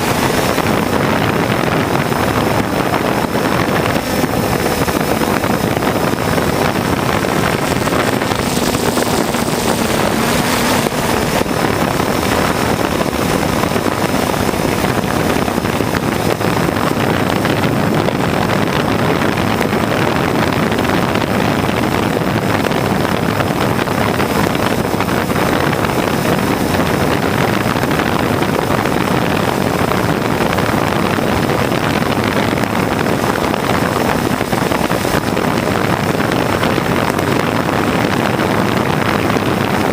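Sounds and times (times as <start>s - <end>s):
drone propellers whirring: 0.0s - 18.6s
wind rushing over microphone: 0.0s - 39.9s.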